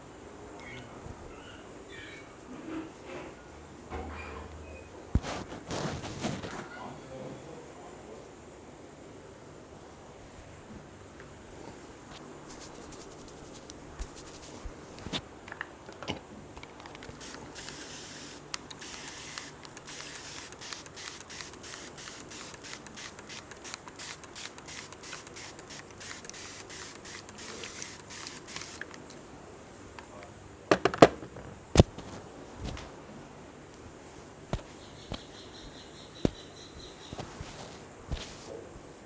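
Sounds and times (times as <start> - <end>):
hands rubbing and scratching hair: 5.2 - 6.7, 11.5 - 15.2, 33.7 - 39.0
sharp clicks: 18.4 - 26.4.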